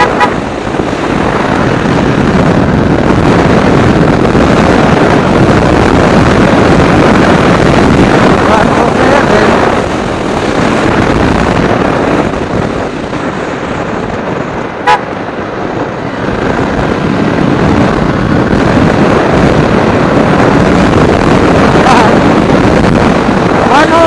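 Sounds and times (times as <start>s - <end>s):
horn toot: 0.0s - 0.4s, 14.8s - 15.1s
motorcycle road and engine rumble: 0.0s - 24.0s
wind rushing over microphone: 0.0s - 24.0s.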